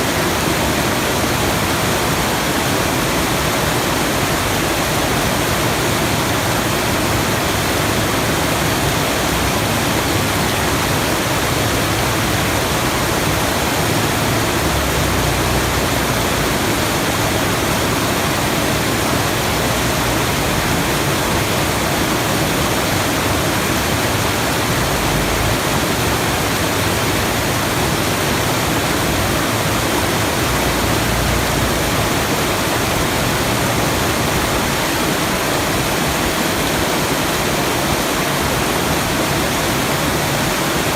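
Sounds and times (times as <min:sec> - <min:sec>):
rushing falling water: 0:00.0 - 0:40.9.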